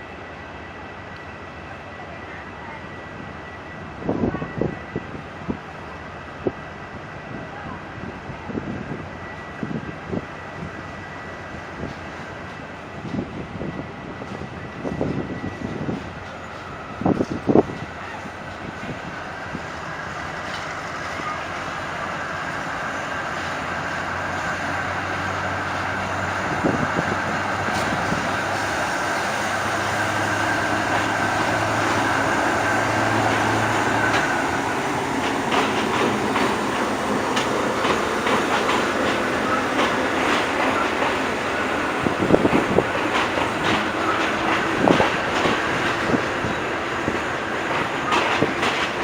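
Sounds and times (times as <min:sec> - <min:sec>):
train engine running: 0:00.0 - 0:49.0
wheels clicking over rail joints: 0:25.8 - 0:49.0.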